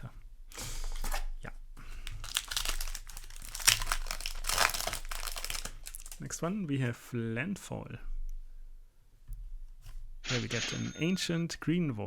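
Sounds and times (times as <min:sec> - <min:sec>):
foil wrapper crinkling and tearing: 0:02.0 - 0:06.3.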